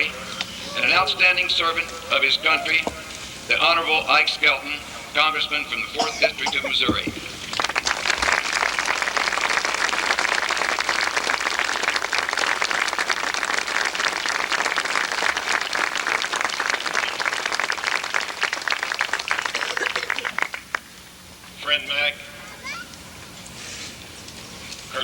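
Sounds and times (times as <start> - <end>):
audience applauding: 6.8 - 20.8.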